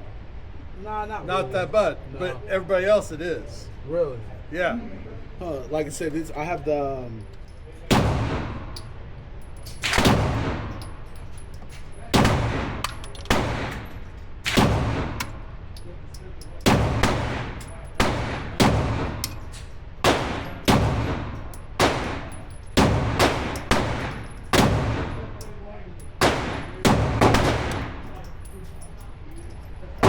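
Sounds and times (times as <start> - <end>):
gunshots with ringing echo: 7.9 - 8.8, 9.8 - 11.1, 12.1 - 15.6, 16.6 - 25.4, 26.2 - 28.1.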